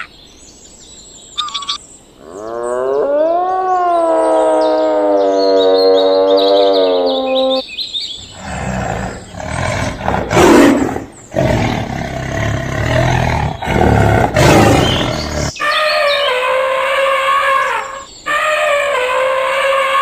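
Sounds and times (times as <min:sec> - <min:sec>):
large animal roaring: 0:08.2 - 0:15.6.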